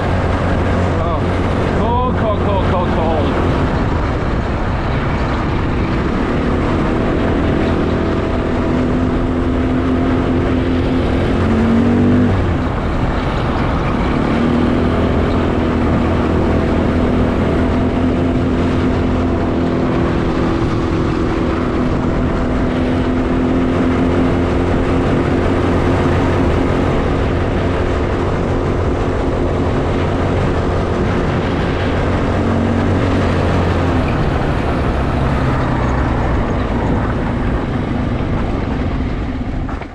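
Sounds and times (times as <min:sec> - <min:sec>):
car engine running: 0:00.0 - 0:39.9
tyres on road: 0:00.0 - 0:39.9.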